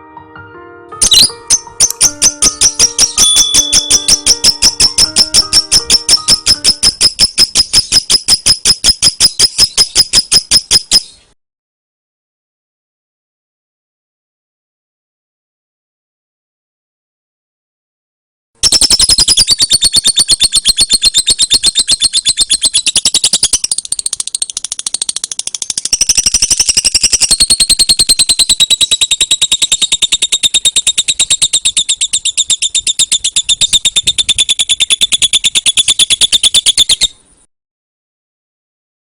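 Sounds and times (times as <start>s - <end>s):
lovebird chirping rapidly: 1.0s - 11.3s, 18.6s - 37.5s.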